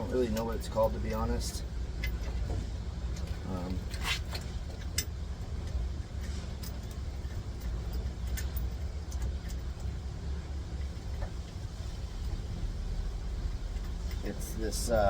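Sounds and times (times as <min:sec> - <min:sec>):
low background rumble: 0:00.0 - 0:15.0.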